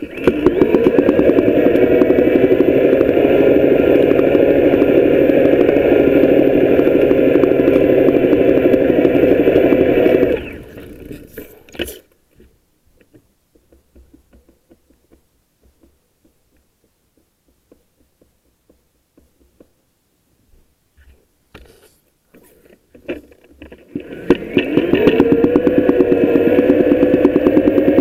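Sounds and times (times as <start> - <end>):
electric bike motor whine: 0.0 - 11.7, 23.9 - 28.0
clunk: 10.4 - 19.7.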